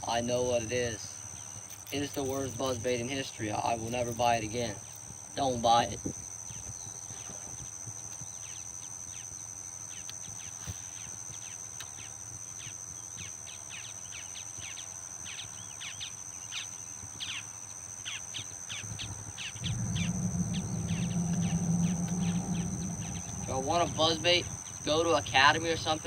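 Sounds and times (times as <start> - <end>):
insects droning: 0.0 - 26.0
low hum: 19.6 - 24.8.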